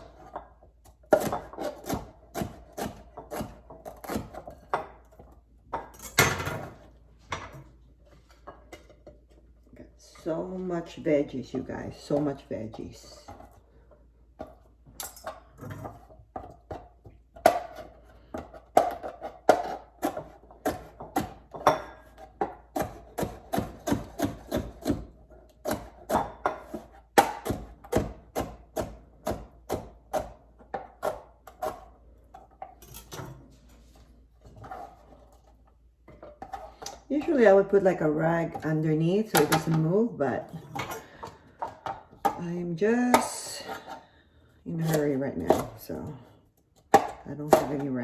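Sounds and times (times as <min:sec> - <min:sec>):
knife chopping on cutting board: 0:01.0 - 0:04.5, 0:22.2 - 0:31.9.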